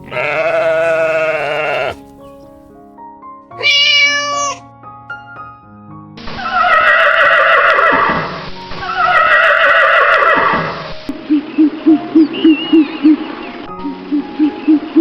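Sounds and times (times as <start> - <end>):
horse whinnying: 0.0 - 2.1, 6.6 - 8.1, 8.9 - 10.6.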